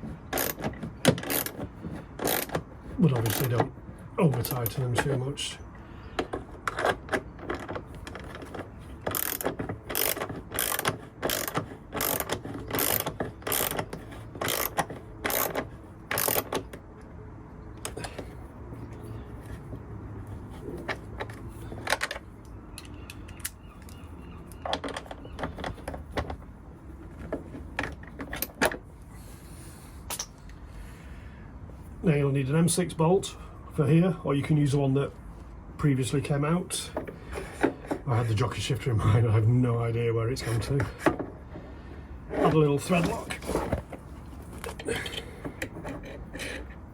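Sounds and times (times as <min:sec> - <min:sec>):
hand ratchet clicking: 0:00.3 - 0:01.6, 0:02.2 - 0:02.6, 0:09.1 - 0:16.6.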